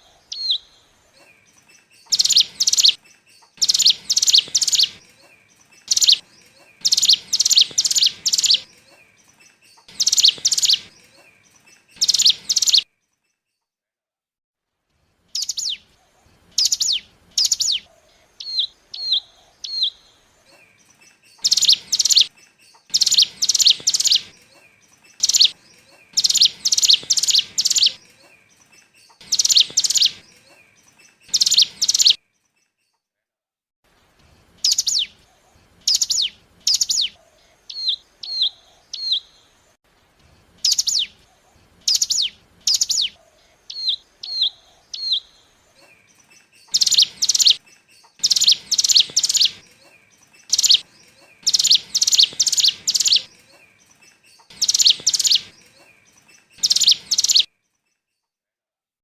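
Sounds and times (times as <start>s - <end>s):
bird chips: 0.3s - 13.4s, 19.8s - 33.0s, 41.8s - 58.2s.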